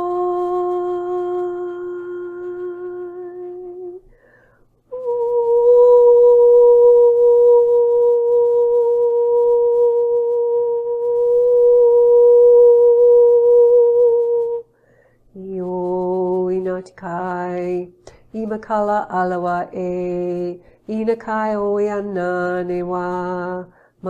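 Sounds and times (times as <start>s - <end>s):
woman singing high note: 0.0s - 4.1s, 4.9s - 14.7s, 15.4s - 23.7s
lower sung note: 4.9s - 14.6s.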